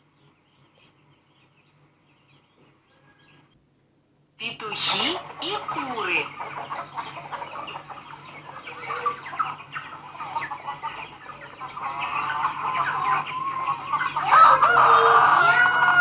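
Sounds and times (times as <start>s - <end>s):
chickens clucking: 4.7s - 16.0s.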